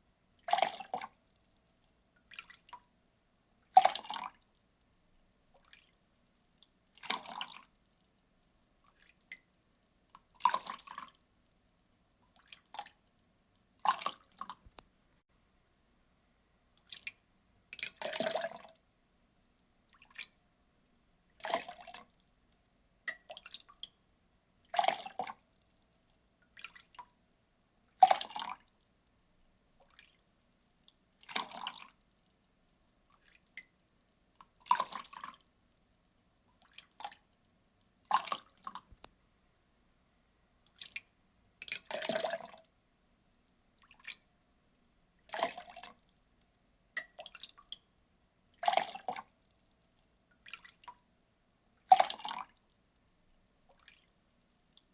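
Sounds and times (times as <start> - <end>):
water dripping: 0.0 - 14.9, 16.8 - 39.1, 40.7 - 54.9
water pouring in splashes: 3.7 - 4.4, 10.4 - 11.2, 17.7 - 18.7, 21.4 - 22.1, 31.2 - 32.0, 41.6 - 42.6, 45.2 - 46.0, 48.6 - 49.3, 51.8 - 52.6.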